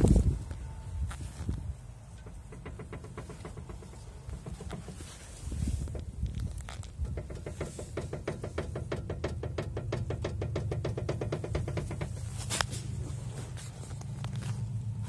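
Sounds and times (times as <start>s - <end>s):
steering rack knocking: 2.0s - 6.2s, 6.8s - 13.0s.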